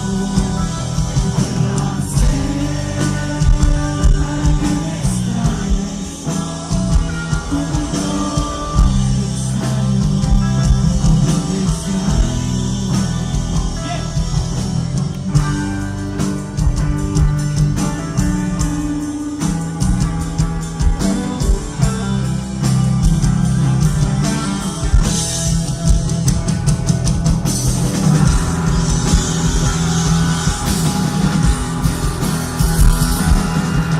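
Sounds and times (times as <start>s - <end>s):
person singing: 0.0s - 14.2s
bass guitar: 0.0s - 33.9s
drum kit: 0.0s - 33.9s
electric guitar: 0.0s - 33.9s.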